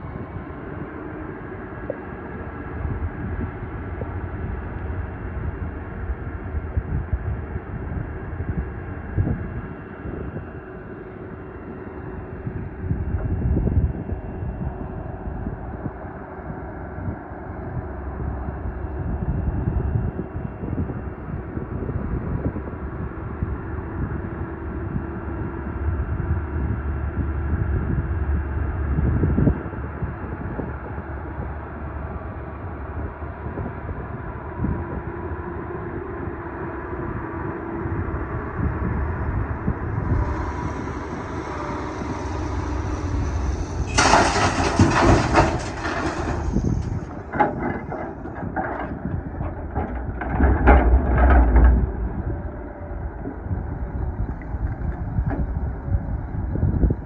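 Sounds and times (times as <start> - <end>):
excavator diesel engine running: 30.3 - 57.0
hydraulic whine: 36.2 - 57.0
loud rattling clatter: 39.9 - 55.6.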